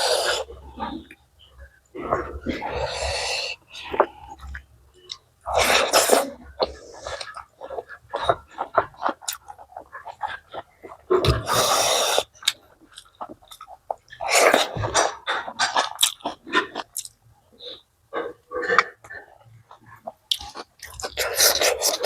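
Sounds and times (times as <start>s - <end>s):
chewing and mouth smacking: 3.7s - 17.2s, 18.2s - 22.0s.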